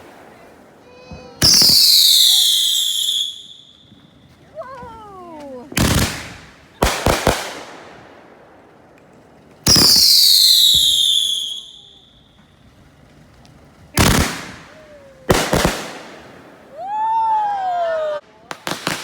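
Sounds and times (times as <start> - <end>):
firework bangs: 0.0 - 4.2, 5.7 - 12.8, 13.8 - 17.4, 18.4 - 19.0
firework whistle falling in pitch: 9.8 - 12.0
crackling pops: 12.4 - 16.4.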